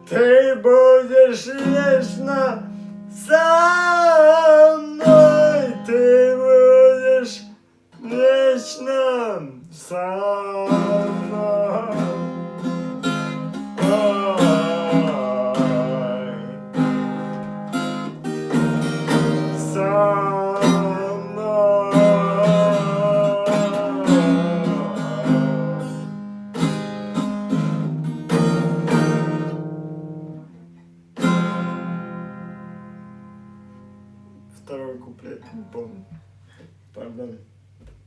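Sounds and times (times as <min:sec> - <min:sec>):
acoustic guitar strumming: 0:00.0 - 0:36.8
wordless wavering vocal: 0:03.2 - 0:12.5, 0:13.8 - 0:16.7, 0:19.3 - 0:26.1, 0:35.2 - 0:36.2.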